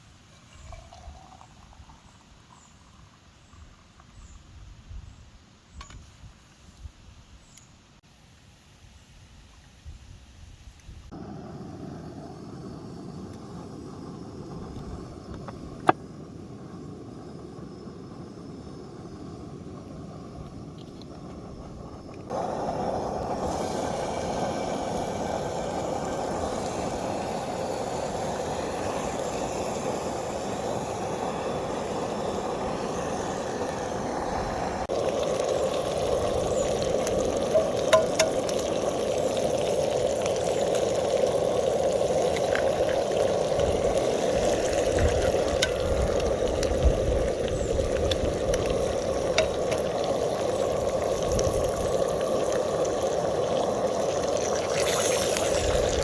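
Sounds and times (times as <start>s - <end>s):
food sizzling: 22.3s - 56.0s.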